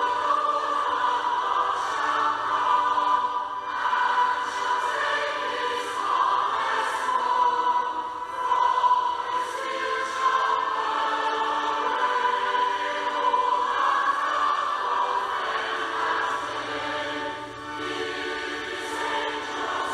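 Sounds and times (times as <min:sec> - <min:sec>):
choir singing a hymn: 0:00.0 - 0:19.9.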